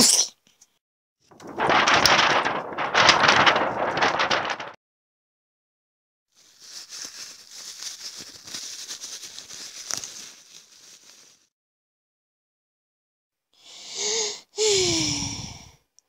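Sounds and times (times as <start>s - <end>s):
hissing rustling noise: 1.4s - 4.8s, 6.4s - 11.5s.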